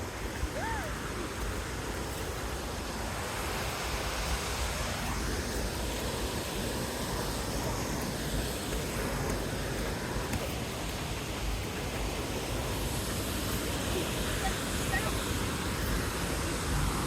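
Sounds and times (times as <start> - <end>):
fast-flowing water rushing: 0.0 - 17.0.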